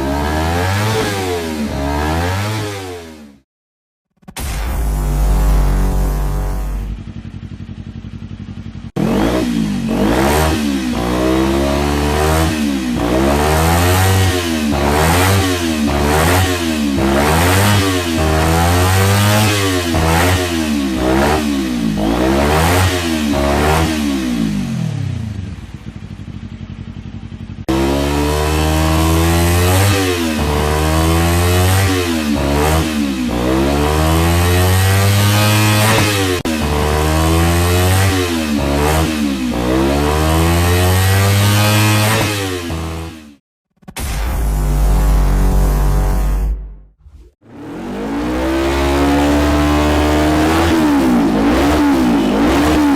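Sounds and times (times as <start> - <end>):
motorcycle engine revving: 0.0 - 3.5, 4.2 - 52.9.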